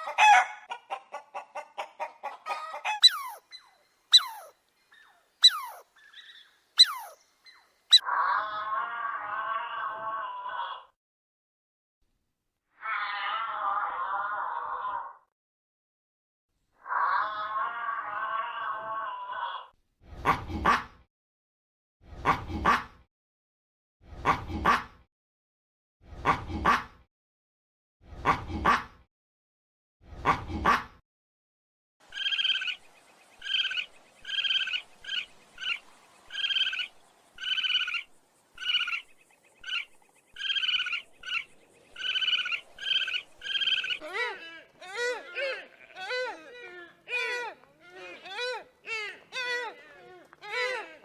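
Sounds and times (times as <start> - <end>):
dog barking: 0.0 - 0.7
frogs croaking: 32.0 - 44.1.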